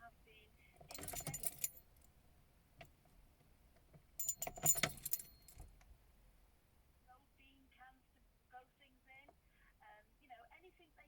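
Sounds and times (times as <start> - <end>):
metallic jingling and clinking: 0.8 - 2.1, 4.2 - 5.7.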